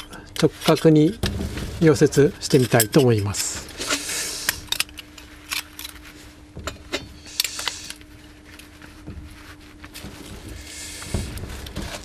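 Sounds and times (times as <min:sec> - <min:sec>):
steel plates clinking: 0:00.0 - 0:05.6
faint steady hum: 0:00.0 - 0:12.0.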